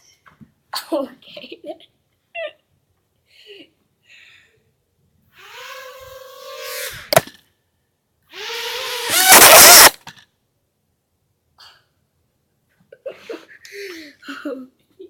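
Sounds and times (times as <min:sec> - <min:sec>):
toy drone propellers buzzing: 0:05.4 - 0:07.2, 0:08.3 - 0:10.0.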